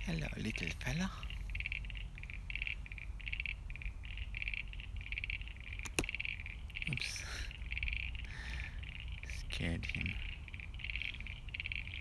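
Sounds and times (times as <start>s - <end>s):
frogs calling: 0.0s - 12.0s
sharp click: 5.8s - 6.2s.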